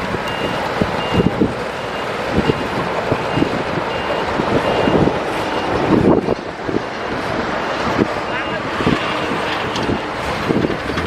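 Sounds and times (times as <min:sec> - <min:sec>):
heavy machine running: 0:00.0 - 0:11.0
reversing alarm beeping: 0:00.2 - 0:06.2, 0:08.2 - 0:09.5.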